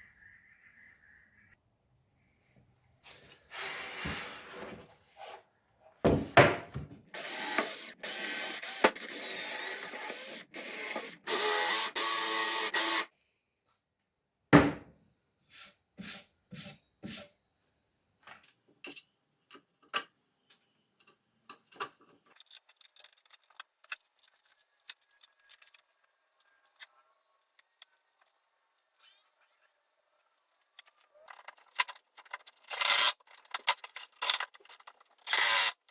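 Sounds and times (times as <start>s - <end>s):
power drill running: 7.2s - 13.1s
knock: 14.6s - 14.9s
small clicks of parts handled: 18.4s - 29.0s.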